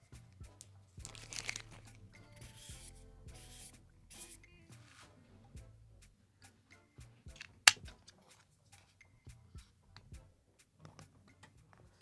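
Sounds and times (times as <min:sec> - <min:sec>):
small plastic parts clicking: 0:01.1 - 0:01.8, 0:07.4 - 0:08.0.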